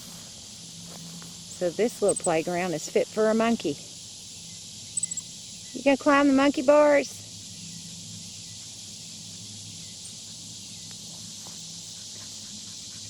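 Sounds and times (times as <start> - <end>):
high-pitched insect chorus: 0.0 - 13.0.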